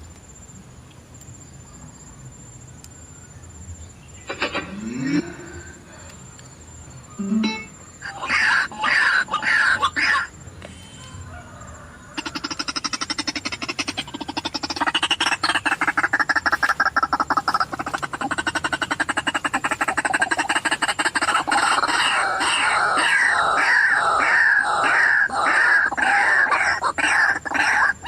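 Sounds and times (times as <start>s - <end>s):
loud falling bird calls: 4.2s - 6.1s, 12.2s - 28.0s
croaking bird pulses: 4.2s - 6.2s, 7.2s - 10.3s, 12.2s - 28.0s.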